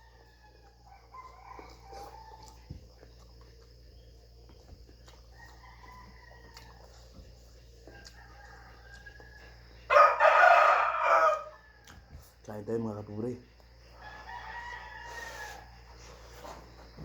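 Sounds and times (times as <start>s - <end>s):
roosters crowing: 0.0s - 2.7s, 5.3s - 7.1s, 7.8s - 12.3s, 13.9s - 16.8s
low steady hum: 0.0s - 10.2s.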